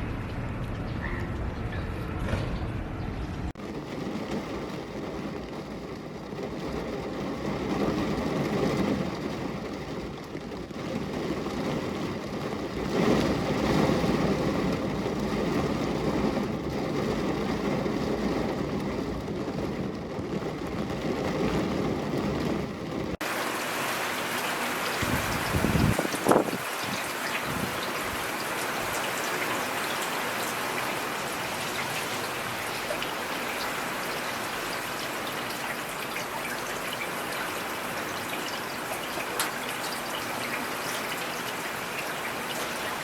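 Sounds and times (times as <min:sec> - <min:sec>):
steady rain falling: 0:03.3 - 0:43.0
hissy water sound: 0:23.2 - 0:43.0.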